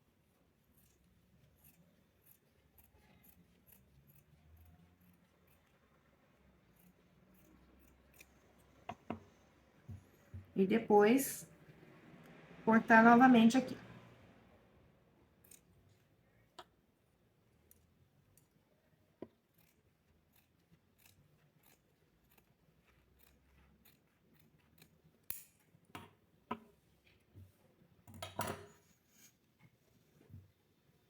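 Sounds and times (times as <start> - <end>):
scissors snipping felt: 0.7 - 5.9, 6.6 - 9.1, 19.2 - 25.7.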